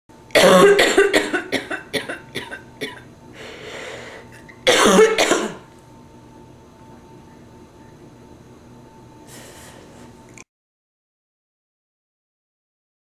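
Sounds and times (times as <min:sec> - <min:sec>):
woman coughing: 0:00.4 - 0:03.1, 0:04.6 - 0:05.7
breath: 0:03.4 - 0:04.4, 0:09.3 - 0:10.2.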